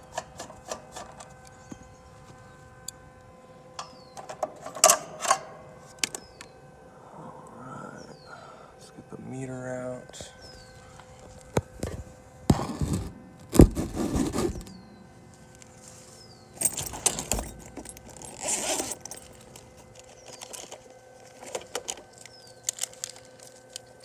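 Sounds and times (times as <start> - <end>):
faint steady hum: 0.0 - 24.0
metal tools clattering: 3.8 - 5.7, 16.6 - 22.1.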